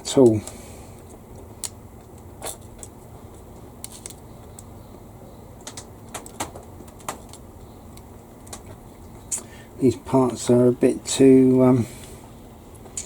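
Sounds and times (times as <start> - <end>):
plastic model parts clicking: 3.8 - 4.7.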